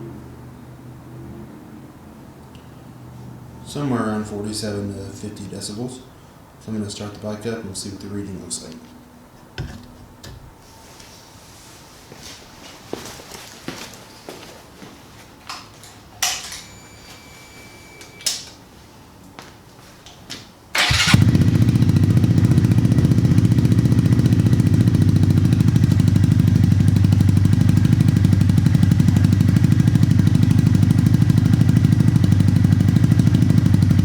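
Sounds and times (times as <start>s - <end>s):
motorcycle engine idling: 20.8s - 34.0s.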